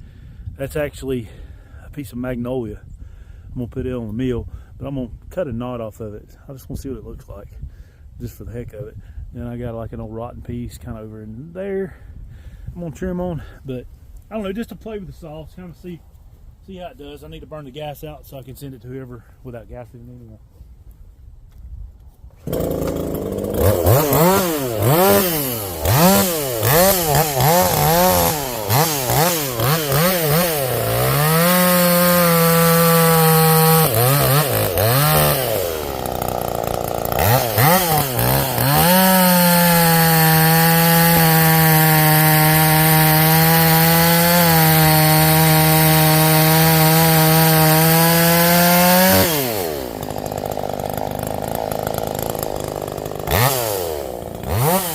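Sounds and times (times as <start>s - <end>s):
chainsaw revving and cutting wood: 22.4s - 54.9s.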